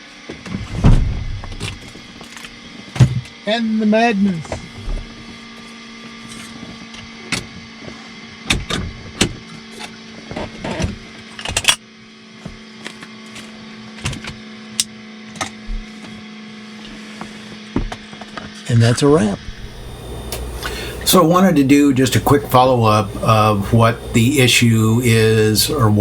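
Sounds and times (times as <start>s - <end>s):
electrical hum: 19.4s - 26.0s.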